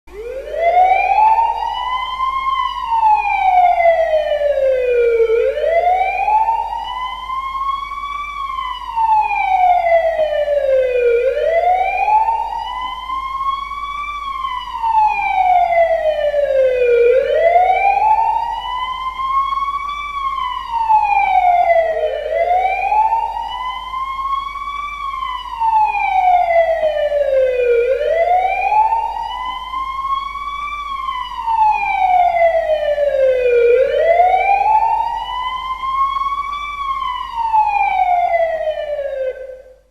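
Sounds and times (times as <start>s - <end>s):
emergency siren wailing: 0.1s - 39.9s.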